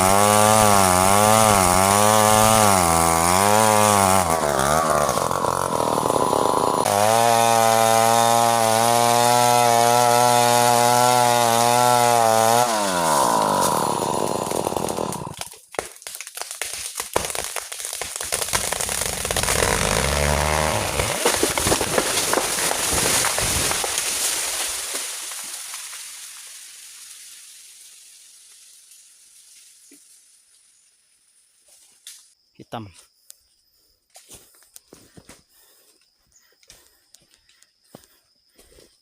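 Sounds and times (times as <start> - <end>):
chainsaw cutting wood: 0.0 - 26.1
wood cracking and crackling: 12.5 - 27.5.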